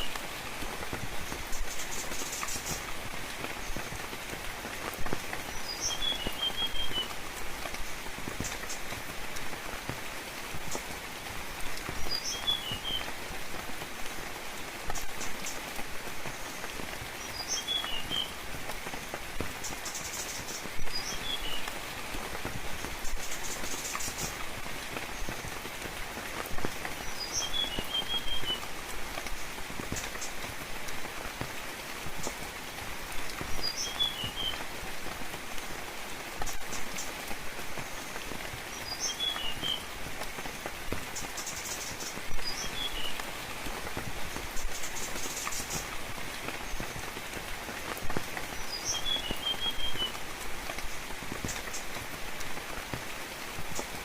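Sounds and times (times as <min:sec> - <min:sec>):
rain pattering: 0:00.0 - 0:54.0
small songbird chirping: 0:05.5 - 0:07.2, 0:12.0 - 0:13.1, 0:17.2 - 0:18.4, 0:27.0 - 0:28.6, 0:33.6 - 0:34.6, 0:38.7 - 0:39.9, 0:48.6 - 0:50.2.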